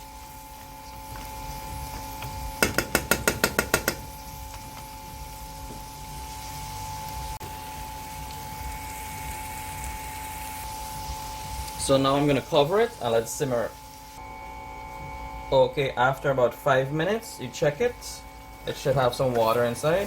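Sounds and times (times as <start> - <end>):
steady low hum: 0.0 - 20.0
sharp metallic taps: 2.6 - 4.1.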